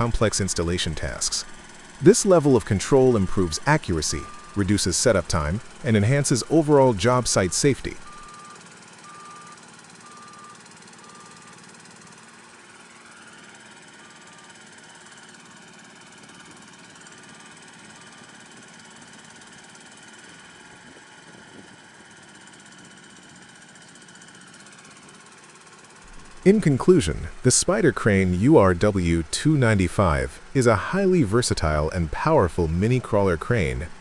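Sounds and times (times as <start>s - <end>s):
small crane engine running: 0.0s - 34.0s
warning beeper: 0.9s - 10.6s.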